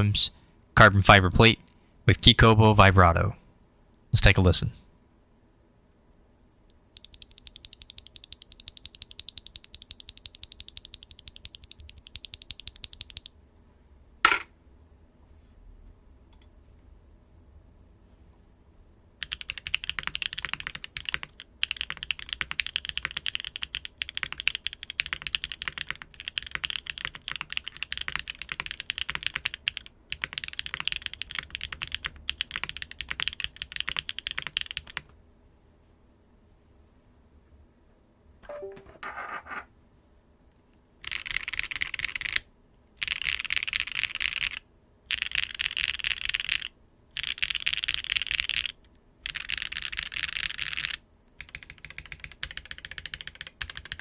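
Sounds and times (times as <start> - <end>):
mechanical keyboard typing: 7.0 - 13.3, 19.2 - 35.1, 41.0 - 42.4, 43.0 - 54.0.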